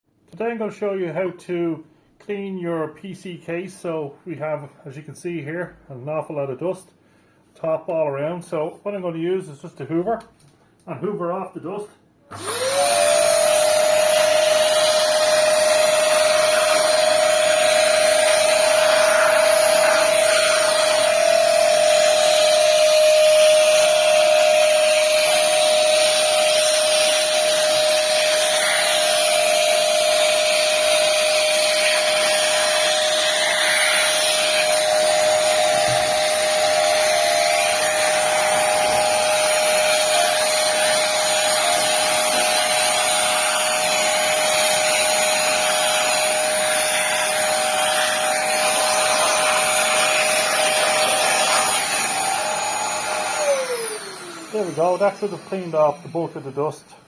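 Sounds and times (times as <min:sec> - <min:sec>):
vacuum cleaner motor whine: 0:12.3 - 0:56.8.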